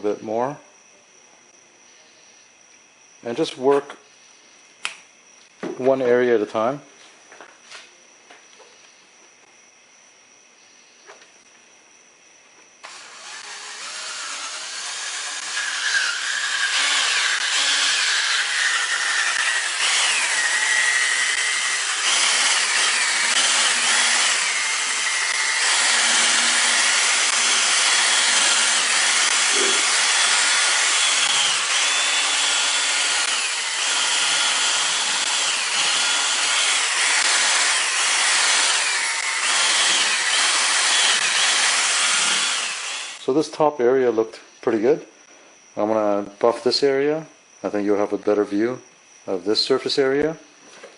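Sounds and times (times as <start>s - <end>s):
cordless drill motor whine: 12.3s - 43.4s.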